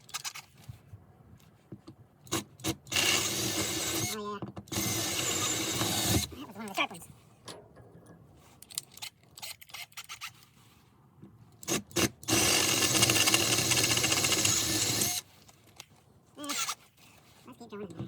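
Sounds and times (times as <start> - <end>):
impact driver drilling hammering: 4.7 - 6.3, 11.7 - 15.2.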